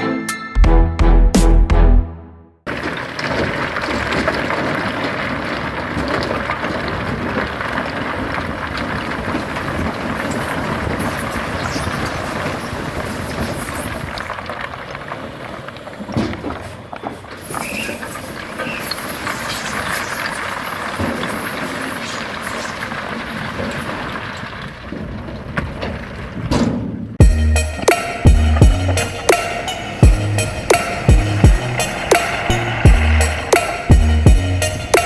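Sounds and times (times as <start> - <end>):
heavy machinery engine noise: 27.2 - 35.0.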